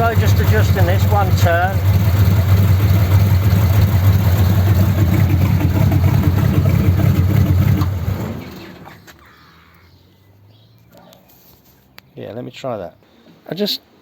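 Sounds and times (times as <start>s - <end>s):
car engine idling: 0.0s - 9.1s.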